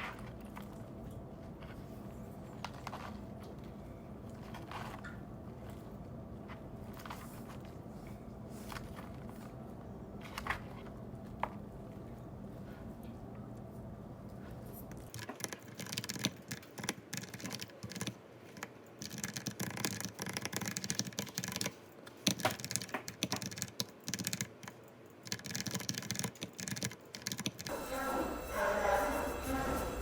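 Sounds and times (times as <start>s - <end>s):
background hum: 0.0s - 30.0s
keyboard key clicks: 15.1s - 27.7s.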